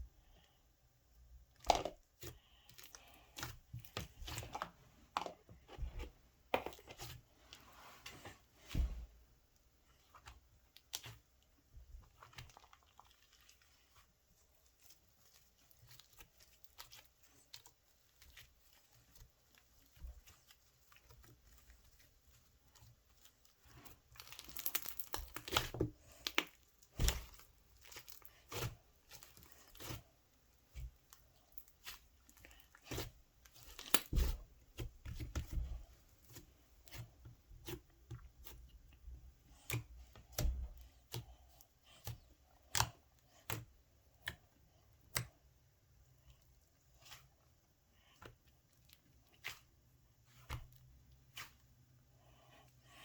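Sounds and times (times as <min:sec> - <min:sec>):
slime crackling and clicking: 0:24.2 - 0:27.2.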